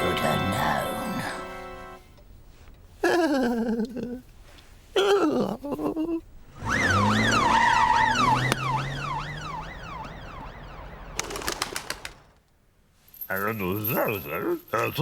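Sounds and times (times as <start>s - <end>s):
cartoon police siren yelping: 6.6s - 11.1s
short run of clicks: 11.2s - 12.2s.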